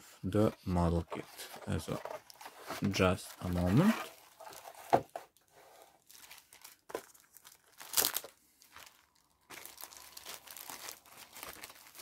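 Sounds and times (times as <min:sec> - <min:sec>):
plastic bags crinkling: 0:01.6 - 0:12.0.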